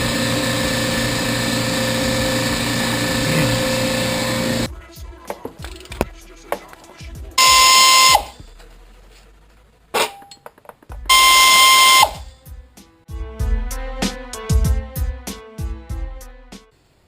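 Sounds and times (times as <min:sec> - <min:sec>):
music: 0:02.4 - 0:09.6, 0:10.8 - 0:16.8
loud electronic beeps: 0:07.4 - 0:08.4, 0:11.1 - 0:12.3.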